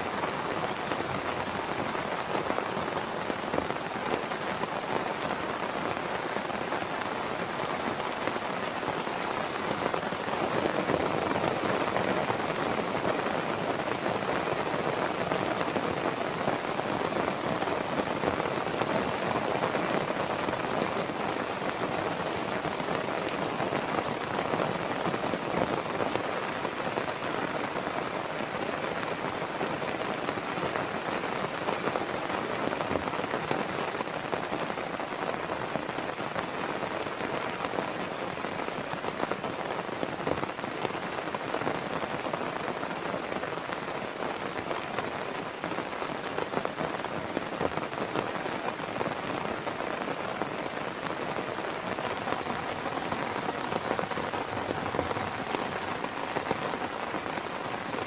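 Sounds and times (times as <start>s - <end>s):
heavy rain falling: 0.0s - 58.0s.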